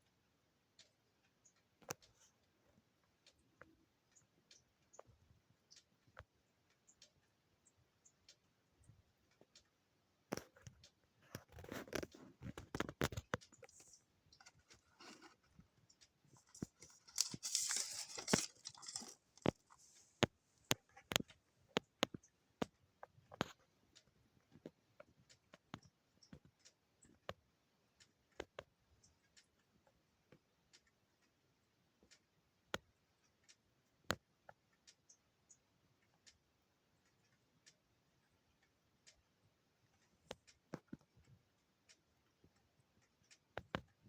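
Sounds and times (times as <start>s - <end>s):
faint small clicks and taps: 0.0s - 44.0s
paper packaging crinkling: 16.4s - 20.0s.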